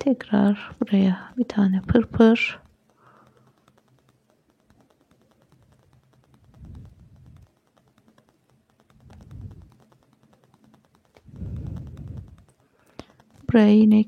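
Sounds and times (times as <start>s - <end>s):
needlework light clicking: 0.0s - 14.0s
soft low thumps: 6.3s - 7.6s, 8.9s - 10.1s, 11.2s - 12.6s.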